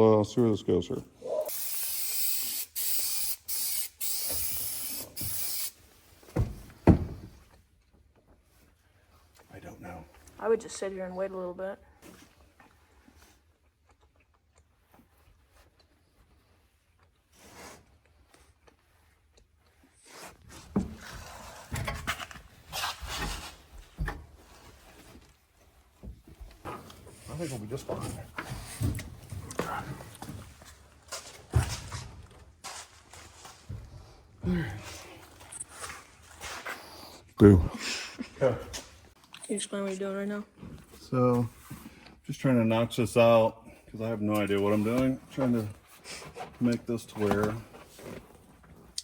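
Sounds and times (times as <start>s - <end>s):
aerosol spray hissing: 1.5s - 5.8s.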